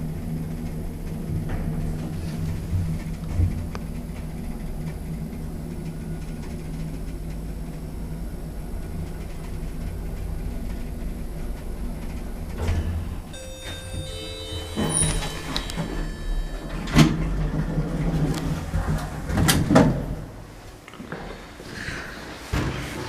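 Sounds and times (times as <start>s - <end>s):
lift humming: 0.0s - 20.7s
short steady tones: 13.3s - 17.8s.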